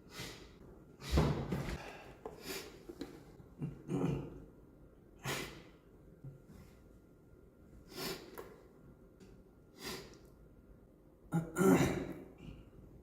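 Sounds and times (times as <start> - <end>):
man sniffling and breathing: 0.0 - 2.9, 5.2 - 5.8, 7.8 - 8.4, 9.7 - 10.3.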